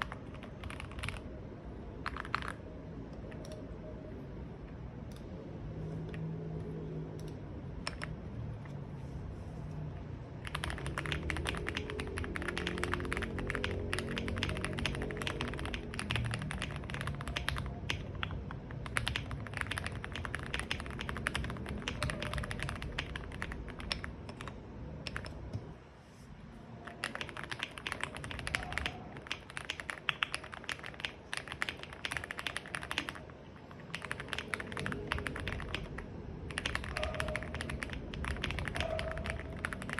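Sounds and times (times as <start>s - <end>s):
mechanical keyboard typing: 0.0s - 1.3s, 2.0s - 2.6s, 7.2s - 8.2s, 10.4s - 25.5s, 26.8s - 39.9s.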